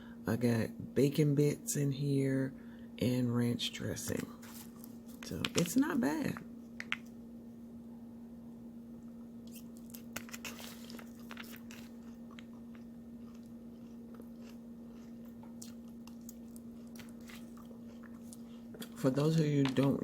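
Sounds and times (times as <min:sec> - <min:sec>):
steady low hum: 0:00.0 - 0:20.0
person chewing crunchy food: 0:09.4 - 0:20.0.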